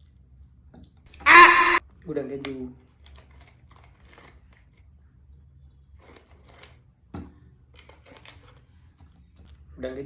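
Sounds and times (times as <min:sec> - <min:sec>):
chewing and crunching: 0:02.8 - 0:09.7.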